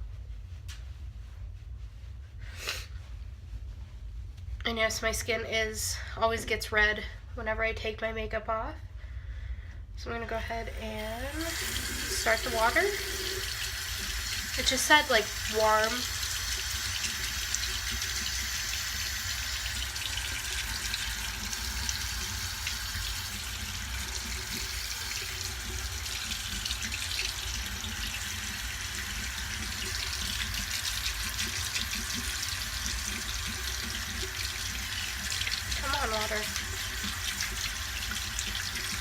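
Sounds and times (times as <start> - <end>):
tap running into basin: 11.4 - 39.0.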